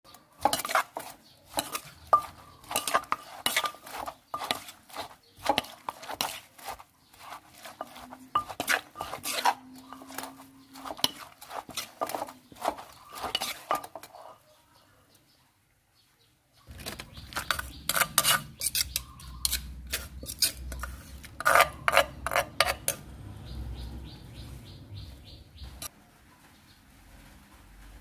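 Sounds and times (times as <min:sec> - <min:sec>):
dishes and utensils clinking: 0:00.4 - 0:06.4, 0:07.5 - 0:14.4.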